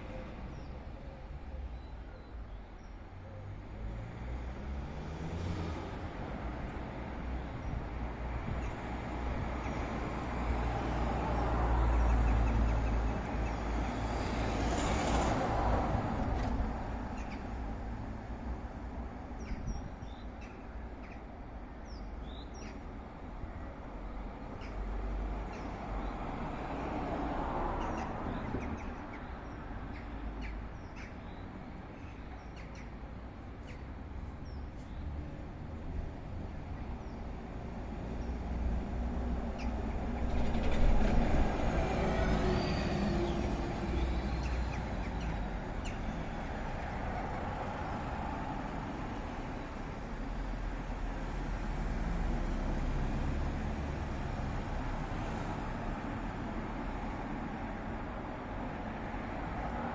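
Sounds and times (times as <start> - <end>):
vehicles passing: 0.0 - 59.9
birds chirping: 19.2 - 26.9, 27.7 - 36.0, 41.9 - 46.6.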